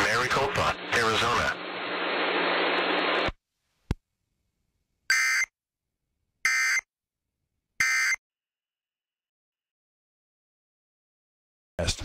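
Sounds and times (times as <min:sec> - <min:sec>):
broadcast hiss: 0:00.0 - 0:03.4.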